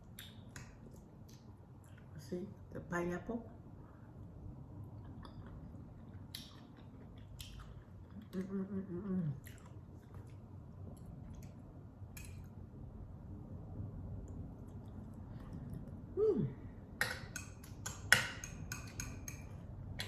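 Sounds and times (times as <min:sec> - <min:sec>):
person chewing food: 0:04.8 - 0:08.6, 0:09.3 - 0:12.6
person humming mmm: 0:08.3 - 0:09.4, 0:16.2 - 0:16.6.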